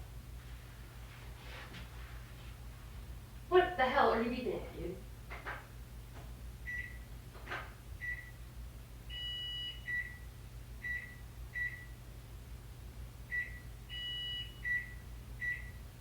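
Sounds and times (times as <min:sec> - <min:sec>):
two-tone microwave beeps: 0:06.6 - 0:07.1, 0:08.0 - 0:08.5, 0:09.1 - 0:12.0, 0:13.3 - 0:15.9
microwave short high beeps: 0:09.1 - 0:10.2, 0:13.3 - 0:15.8.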